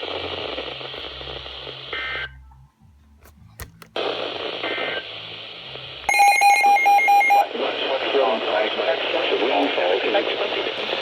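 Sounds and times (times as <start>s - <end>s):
hissing radio signal: 4.0s - 5.8s, 6.6s - 11.0s.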